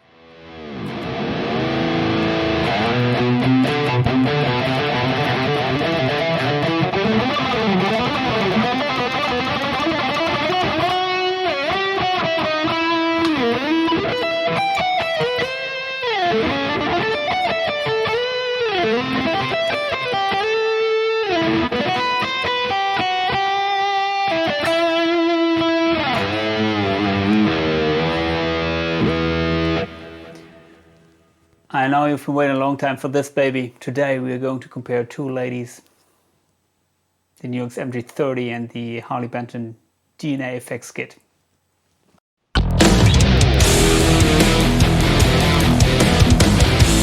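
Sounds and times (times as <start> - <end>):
distorted electric guitar: 0.0 - 31.2, 42.6 - 47.0.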